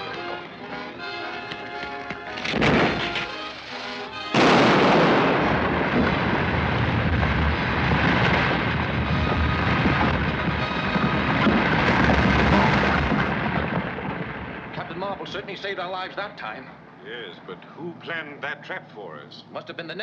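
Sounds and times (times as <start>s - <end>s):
loud explosion with long rumble: 2.5s - 3.2s, 4.3s - 15.6s.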